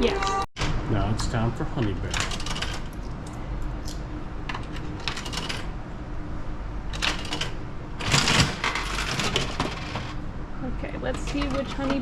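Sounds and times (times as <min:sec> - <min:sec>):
plastic and metal rattles: 0:07.0 - 0:10.2.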